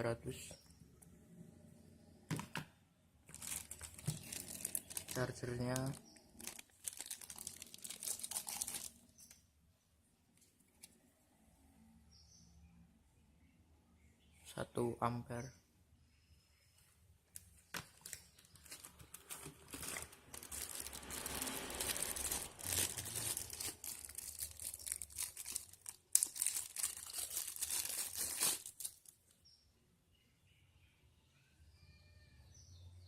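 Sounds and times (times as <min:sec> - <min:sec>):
plastic wrap crinkling: 0:03.2 - 0:09.3, 0:17.3 - 0:29.3.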